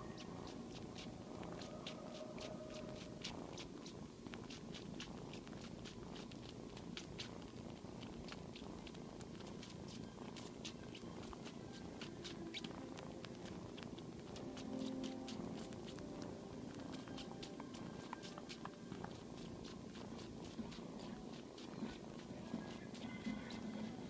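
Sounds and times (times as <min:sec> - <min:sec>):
kitten purring: 0:00.0 - 0:24.0
wet sucking clicks: 0:00.1 - 0:24.0.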